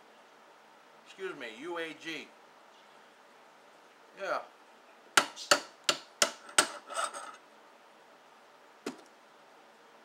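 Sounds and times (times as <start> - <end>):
sharp knocks on metal: 5.2 - 6.8.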